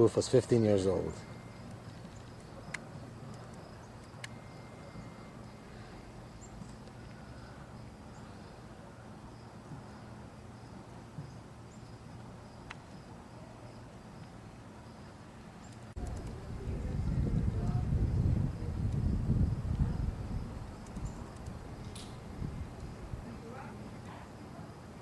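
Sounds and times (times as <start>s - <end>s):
faint insect chirring: 0.0s - 25.0s
loud low rumble: 16.0s - 23.3s
low rumble: 16.0s - 23.3s.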